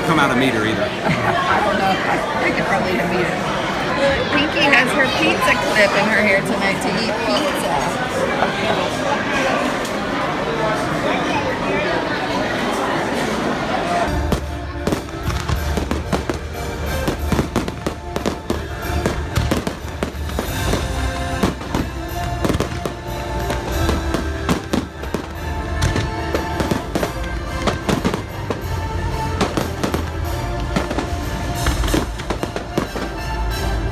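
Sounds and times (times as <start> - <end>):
music playing: 0.0 - 8.8, 13.2 - 33.9
fireworks bangs and crackles: 14.1 - 33.9.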